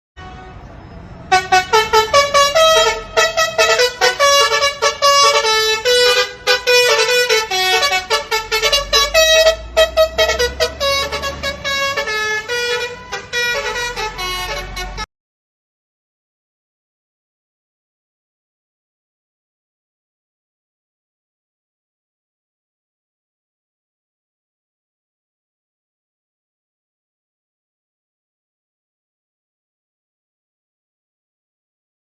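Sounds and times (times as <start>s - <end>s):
multi-tone air horn melody: 0.2s - 0.7s, 1.3s - 15.1s.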